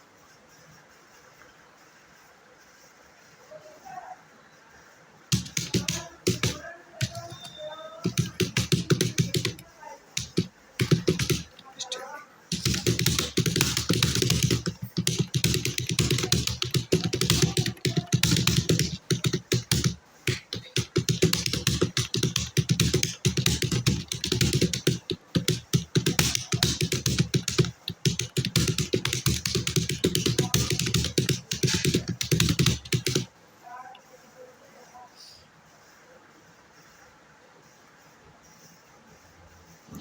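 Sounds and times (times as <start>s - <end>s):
fast keyboard typing: 5.3s - 33.3s.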